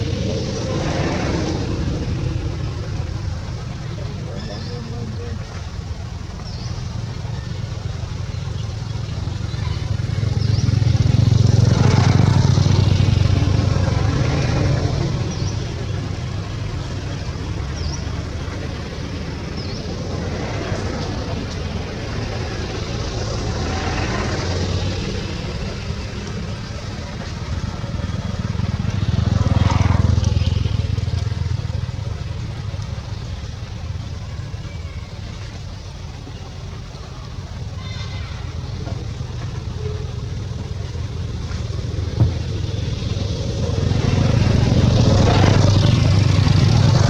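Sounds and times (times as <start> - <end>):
vehicle engine running: 0.0 - 47.0.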